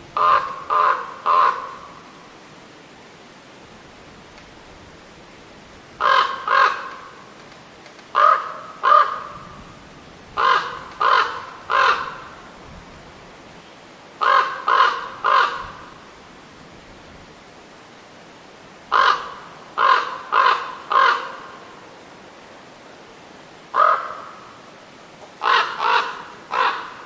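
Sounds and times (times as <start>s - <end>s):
crow cawing: 0.2s - 1.9s, 6.0s - 7.0s, 8.1s - 9.4s, 10.4s - 12.3s, 14.2s - 15.9s, 18.9s - 21.6s, 23.7s - 24.5s, 25.4s - 27.0s.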